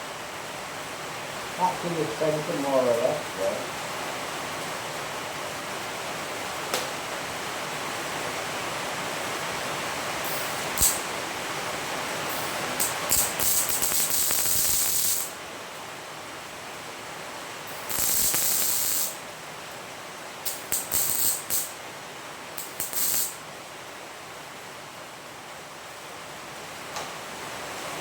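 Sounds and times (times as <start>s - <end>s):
welding arc crackling and hissing: 10.1s - 11.4s, 12.0s - 15.4s, 17.6s - 19.2s, 20.4s - 21.8s, 22.6s - 23.4s.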